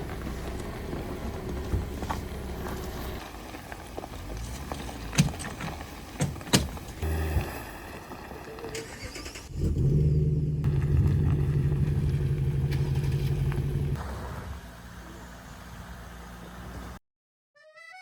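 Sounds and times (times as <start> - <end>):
vehicle engine running: 0.0 - 4.8, 9.5 - 14.0.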